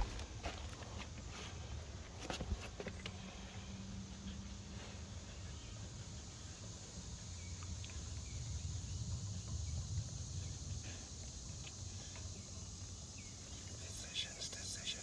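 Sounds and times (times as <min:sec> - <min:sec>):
steady high hiss: 0:05.2 - 0:15.0
faint bird chirps: 0:12.0 - 0:15.0.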